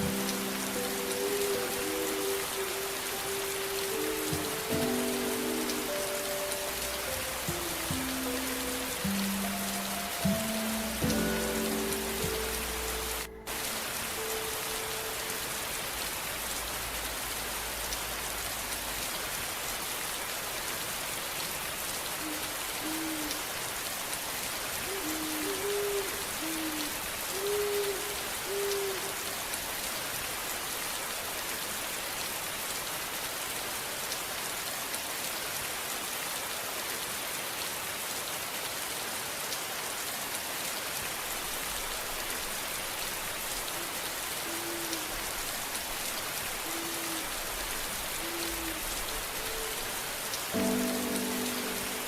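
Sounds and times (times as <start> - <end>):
low hooting notes: 0.0 - 15.8, 50.5 - 52.0
rain falling: 0.0 - 52.0.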